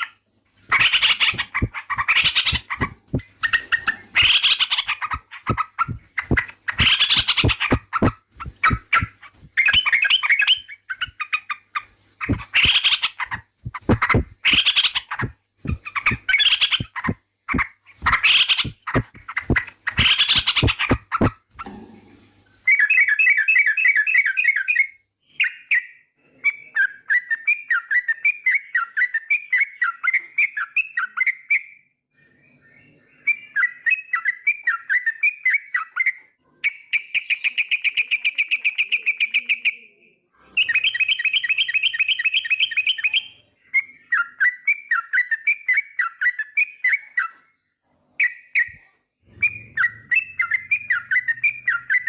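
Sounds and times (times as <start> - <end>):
bird rapid trill and warbling: 0.0 - 21.8, 48.2 - 52.0
bird harsh chattering: 0.7 - 21.8.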